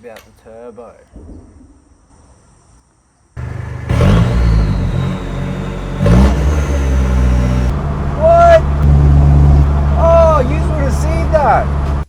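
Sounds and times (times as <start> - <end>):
turbo engine accelerating: 3.4 - 12.0.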